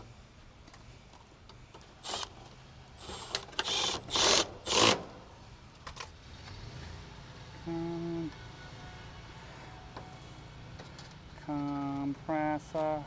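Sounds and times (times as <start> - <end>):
rasping hand tool bursts: 2.0 - 2.3, 3.0 - 5.2.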